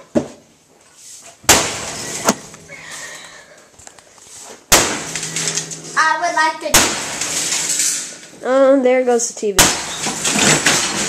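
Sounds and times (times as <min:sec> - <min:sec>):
sledgehammer crashing into tv: 0:01.5 - 0:02.5, 0:04.7 - 0:06.0, 0:06.7 - 0:08.2, 0:09.6 - 0:11.0
sharp crack: 0:01.5 - 0:02.8, 0:04.7 - 0:08.4, 0:09.6 - 0:11.0
breaking and rattling: 0:04.7 - 0:08.4, 0:09.6 - 0:11.0.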